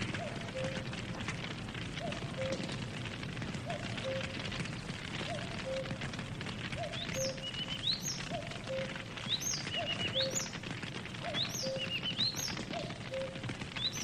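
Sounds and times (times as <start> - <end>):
campfire crackling: 0.0 - 14.0
bird chirping and whistling: 7.0 - 10.5, 11.3 - 14.0.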